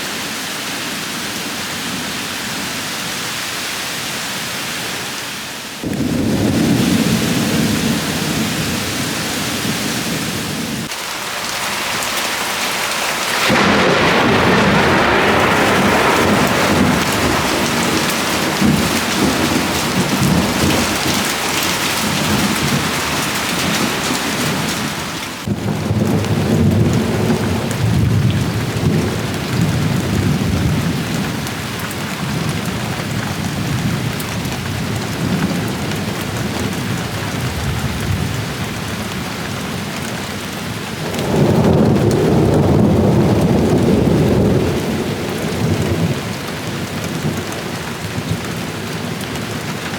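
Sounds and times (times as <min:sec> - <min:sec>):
heavy rain pouring: 0:00.0 - 0:49.9
rolling thunder: 0:05.8 - 0:10.9, 0:13.3 - 0:39.2, 0:41.0 - 0:48.7.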